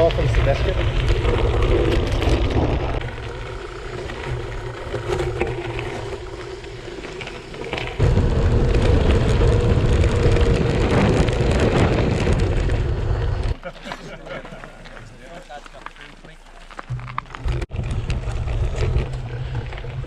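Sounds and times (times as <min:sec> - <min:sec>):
gravel bike ride rumble: 0:00.0 - 0:20.0
wind on microphone: 0:07.7 - 0:13.5, 0:17.4 - 0:20.0.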